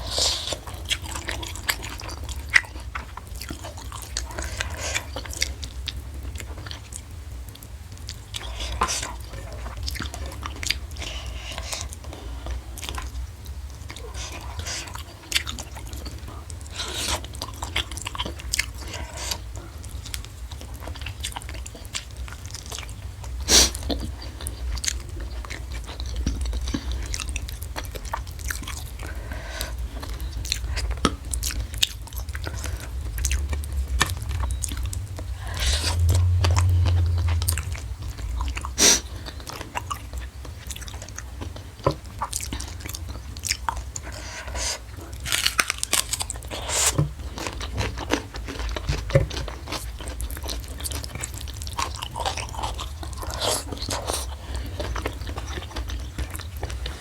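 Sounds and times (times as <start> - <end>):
chewing and crunching food: 0.0 - 57.0
low rumble: 29.8 - 40.3.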